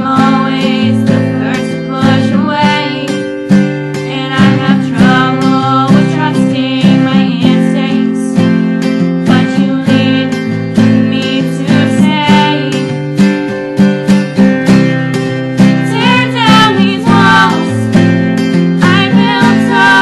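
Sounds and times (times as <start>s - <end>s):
acoustic guitar strumming: 0.0s - 20.0s.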